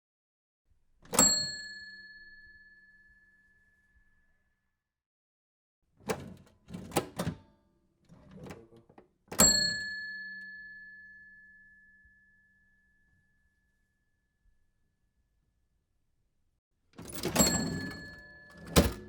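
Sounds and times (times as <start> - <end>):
cash register bell ringing: 1.1 - 2.3, 9.3 - 11.1, 17.0 - 19.0
cash register keys clattering: 17.0 - 19.0
cash register rattle: 17.0 - 19.0.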